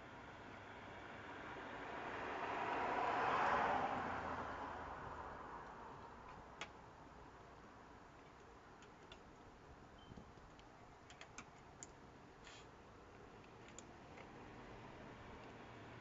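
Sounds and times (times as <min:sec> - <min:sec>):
faint clicks and ticks: 0:08.2 - 0:09.6, 0:10.2 - 0:12.0, 0:13.1 - 0:14.4.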